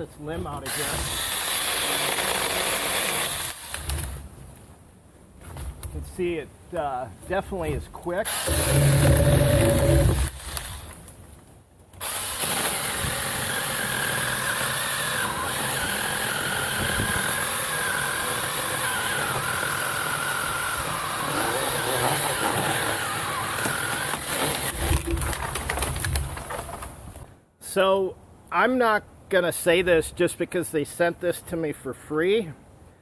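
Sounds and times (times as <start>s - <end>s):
mini chainsaw cutting wood: 0.6s - 4.1s, 8.3s - 10.8s, 12.0s - 25.2s.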